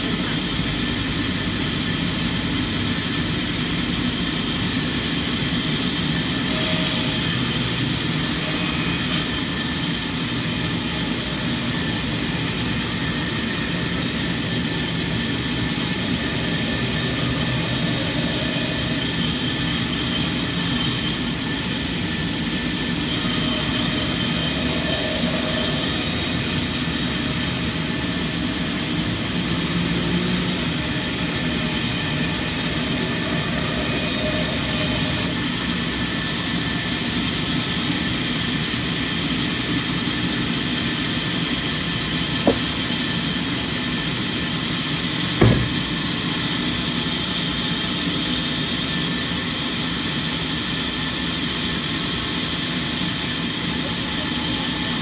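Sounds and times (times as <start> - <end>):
sawmill machinery running: 0.0 - 49.8.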